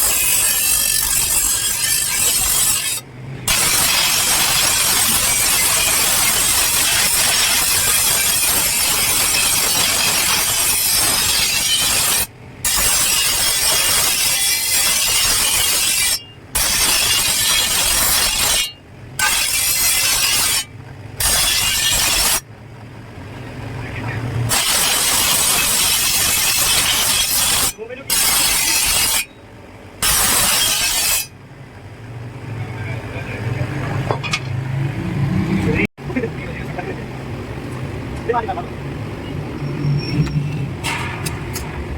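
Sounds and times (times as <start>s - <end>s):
grinding wheel on steel: 0.0s - 22.5s, 24.5s - 29.4s, 30.0s - 31.4s.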